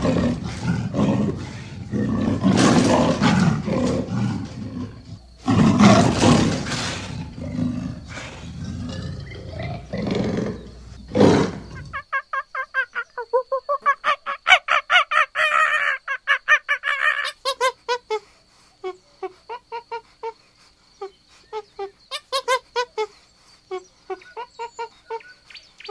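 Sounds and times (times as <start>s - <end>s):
large animal roaring: 0.0s - 12.0s.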